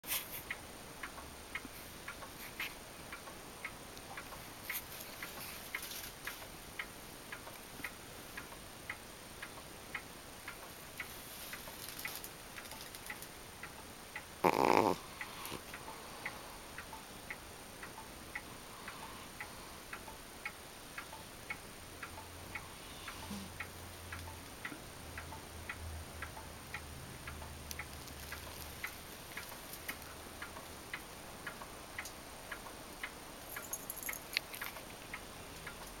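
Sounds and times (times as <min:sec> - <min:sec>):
pendulum clock ticking: 0:00.4 - 0:36.0
cat snoring: 0:14.4 - 0:15.7, 0:22.6 - 0:23.6.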